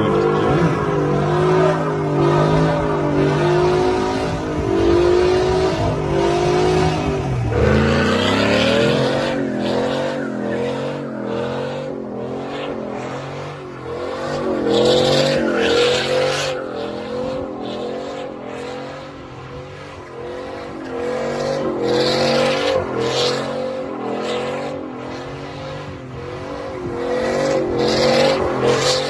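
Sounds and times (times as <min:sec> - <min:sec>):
truck exhaust running: 0:00.0 - 0:11.8.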